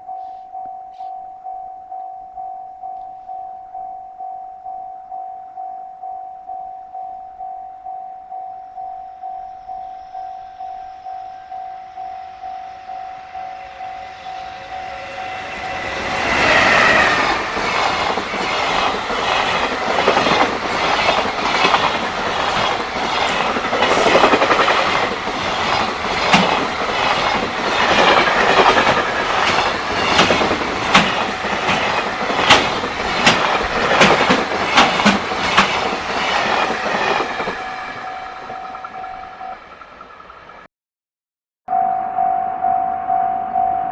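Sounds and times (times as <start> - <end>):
wagon wheels clattering over rail joints: 17.3 - 37.6
level crossing bell ringing: 23.9 - 24.8.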